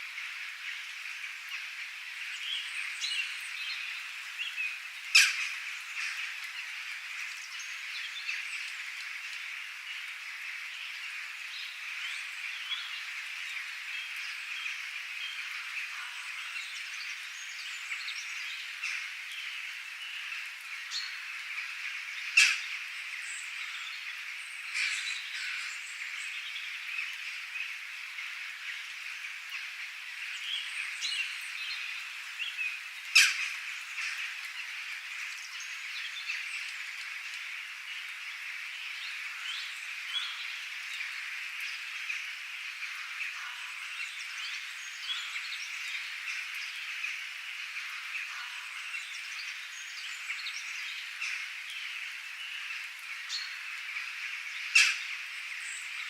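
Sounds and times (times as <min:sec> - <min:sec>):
high-pitched bird chorus: 0:01.2 - 0:08.8, 0:10.8 - 0:38.1, 0:38.7 - 0:56.0
loud sharp bird calls: 0:52.5 - 0:56.0.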